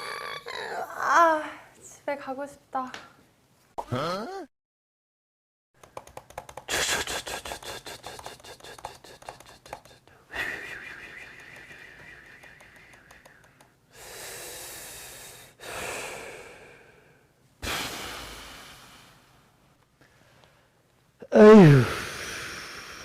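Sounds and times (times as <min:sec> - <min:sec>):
rapid clicking: 0:05.8 - 0:06.7, 0:07.5 - 0:10.1
long breathy hiss: 0:13.9 - 0:19.5, 0:21.6 - 0:23.0.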